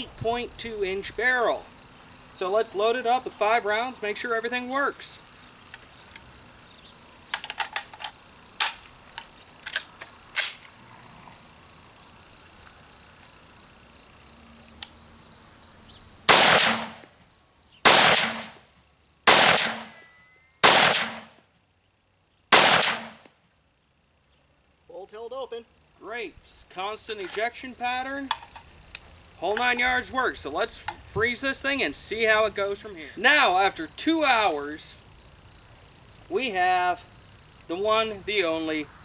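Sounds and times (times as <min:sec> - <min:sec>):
insects chirring: 0:00.0 - 0:39.0
rifle shots: 0:16.3 - 0:17.1, 0:17.9 - 0:18.6, 0:19.3 - 0:20.0, 0:20.6 - 0:21.3, 0:22.5 - 0:23.2
sharp metallic clicks: 0:19.3 - 0:21.4, 0:22.6 - 0:23.3.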